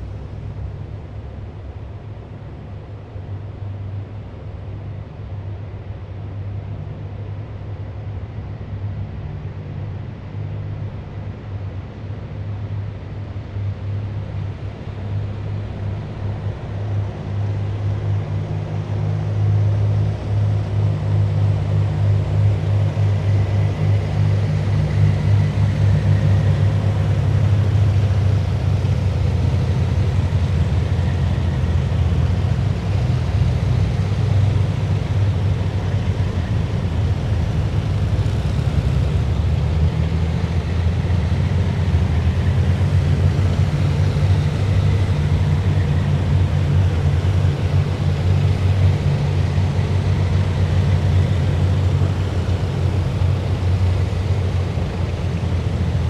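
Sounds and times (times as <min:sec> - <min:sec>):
heavy vehicles engines rumbling: 0:12.9 - 0:56.0.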